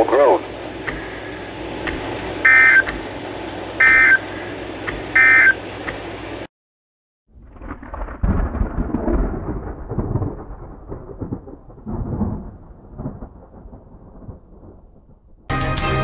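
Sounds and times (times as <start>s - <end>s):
thunder rumbling: 7.3s - 15.5s
music: 15.5s - 16.0s.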